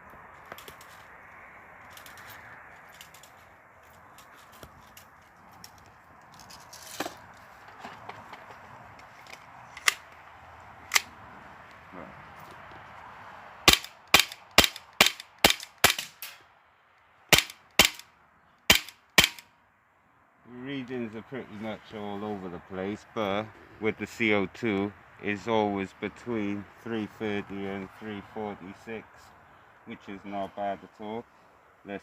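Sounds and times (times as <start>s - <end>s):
airsoft pistol shots: 13.7s - 16.4s, 17.3s - 18.0s, 18.7s - 19.4s.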